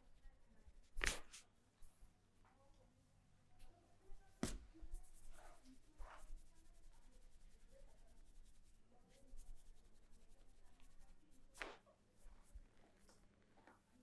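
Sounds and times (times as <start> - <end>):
hands rubbing hair and scalp: 1.0 - 1.4, 4.4 - 12.6.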